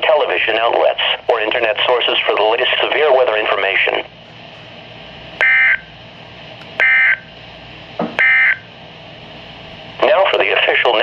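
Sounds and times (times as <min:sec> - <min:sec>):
radio static hiss: 0:00.0 - 0:04.2, 0:10.0 - 0:11.0.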